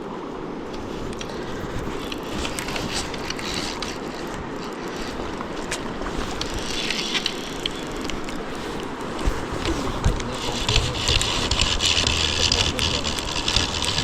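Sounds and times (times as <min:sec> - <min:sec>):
river water rushing: 0:00.0 - 0:14.0
small clicks: 0:00.7 - 0:14.0.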